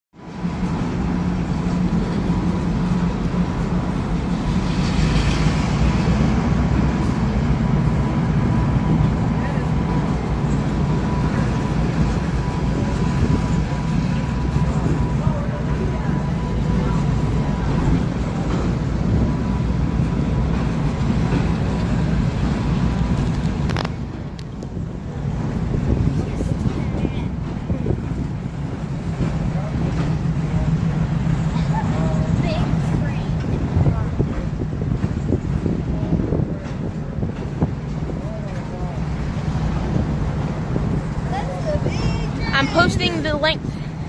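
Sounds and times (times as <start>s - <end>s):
moving vehicle rumble: 0.2s - 44.0s.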